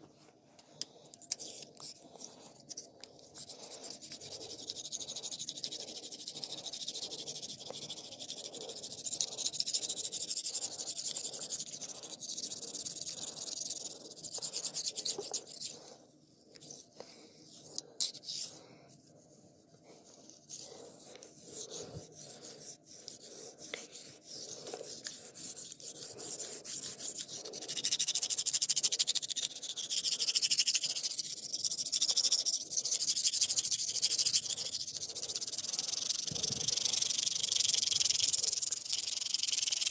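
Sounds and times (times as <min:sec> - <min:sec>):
hands rubbing hair and skin: 0:10.5 - 0:27.6.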